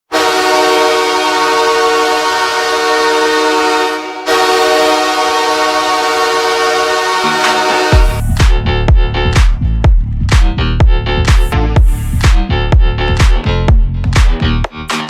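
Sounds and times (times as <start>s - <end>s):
arena goal horn blasts: 0.1s - 8.2s.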